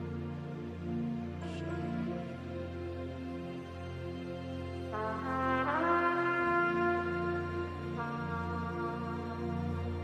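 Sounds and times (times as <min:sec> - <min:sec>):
trumpet playing slow melody: 0:04.9 - 0:10.0.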